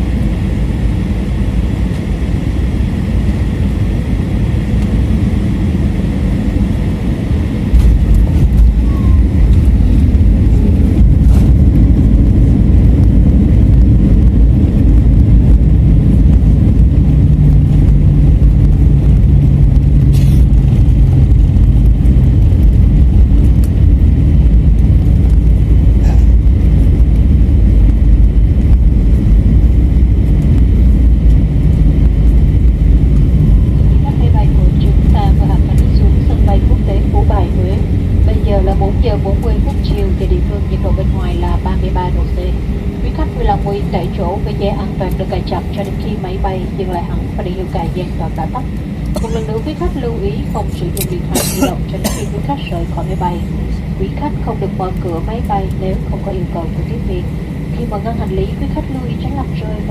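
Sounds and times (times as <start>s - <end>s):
airliner engine noise in cabin: 0.0s - 59.9s
low rumble of wheels on runway: 0.0s - 59.9s.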